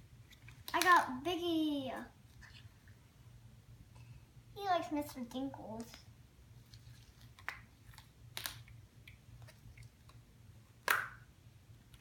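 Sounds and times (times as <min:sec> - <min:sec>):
plastic egg snapping open: 0:07.3 - 0:09.5.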